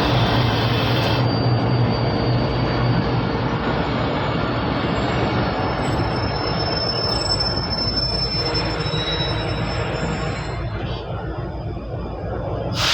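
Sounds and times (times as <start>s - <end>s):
high steady squeal: 0.0s - 11.0s
train wheels rumbling on rail: 0.0s - 12.9s.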